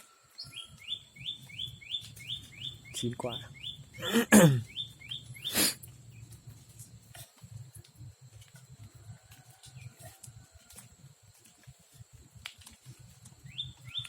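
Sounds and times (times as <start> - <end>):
small bird chirping: 0.0 - 7.4, 13.3 - 14.0.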